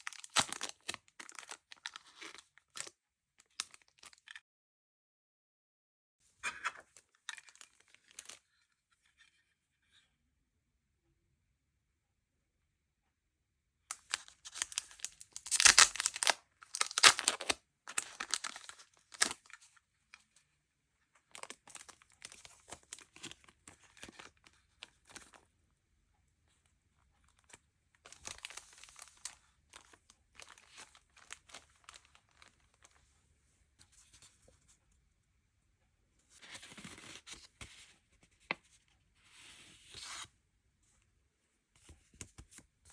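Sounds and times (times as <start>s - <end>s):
packaging being torn open: 0.0s - 2.0s, 13.9s - 19.6s, 28.1s - 29.4s
packaging rustling and crinkling: 0.0s - 2.9s, 6.7s - 8.4s, 13.9s - 19.7s, 21.3s - 25.4s, 27.4s - 33.0s.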